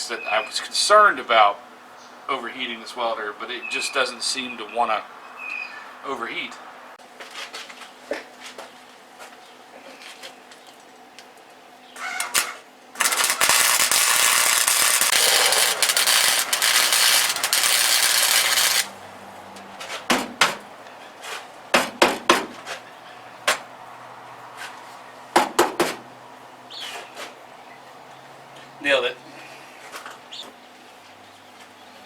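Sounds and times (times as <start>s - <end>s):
welding arc crackling: 12.2s - 19.0s.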